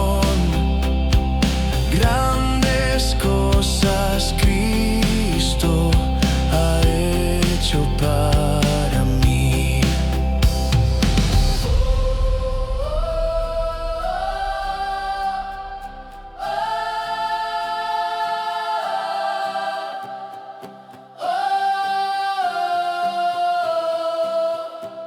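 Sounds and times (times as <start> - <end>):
wordless choir holding chords: 0.0 - 25.0.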